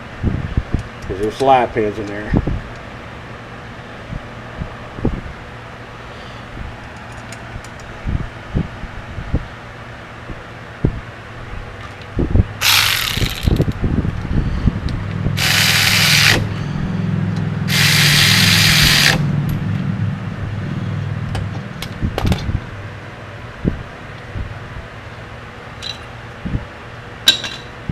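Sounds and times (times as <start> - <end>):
power tool whirring: 12.6 - 13.6, 15.4 - 16.5, 17.7 - 19.3
metal tools clanking: 25.8 - 26.2, 27.2 - 27.8.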